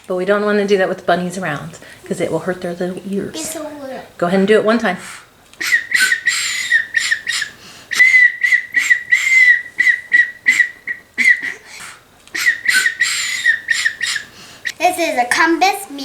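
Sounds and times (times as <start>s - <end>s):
high whistle toots: 5.6s - 14.8s.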